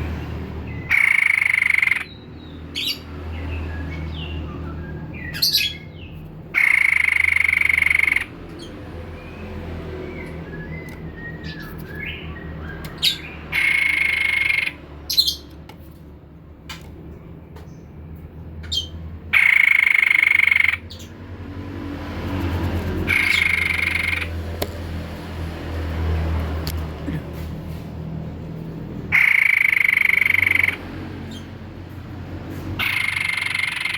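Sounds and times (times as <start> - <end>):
bird high chirps: 0.7 - 15.6, 18.6 - 21.2, 23.1 - 24.4, 32.8 - 33.9
bird buzzy rattling calls: 0.9 - 2.2, 6.6 - 8.7, 12.9 - 15.5, 18.6 - 21.1, 22.9 - 24.4, 29.1 - 31.5, 32.8 - 33.9.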